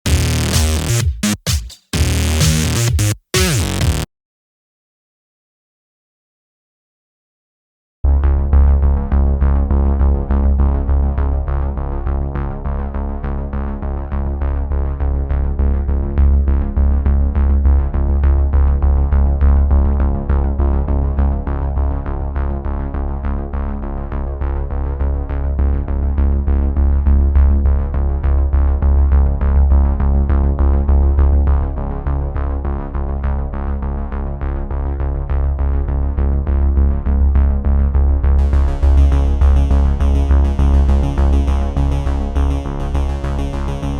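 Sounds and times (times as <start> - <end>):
electronic music with heavy bass: 0.0 - 4.1, 38.4 - 43.9.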